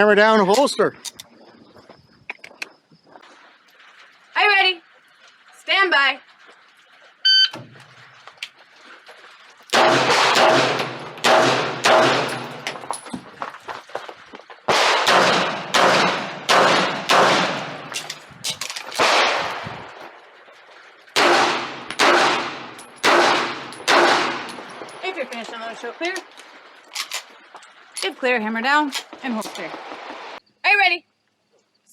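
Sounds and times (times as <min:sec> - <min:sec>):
shot timer beep: 0:07.3 - 0:07.6
handgun shots: 0:09.8 - 0:12.7, 0:14.7 - 0:18.1, 0:18.9 - 0:19.6, 0:21.2 - 0:24.6.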